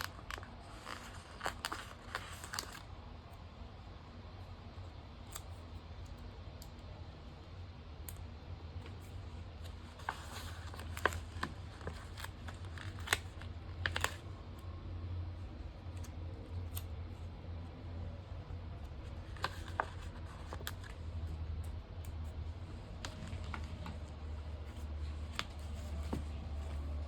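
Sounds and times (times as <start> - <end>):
paper handling and clicks: 0.0 - 3.0, 7.9 - 14.8, 18.0 - 27.0
steady low hum: 0.0 - 27.0.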